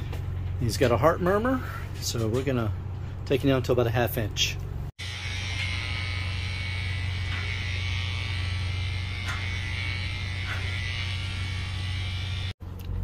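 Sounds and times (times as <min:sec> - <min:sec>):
electric clippers buzzing: 0:05.0 - 0:12.6.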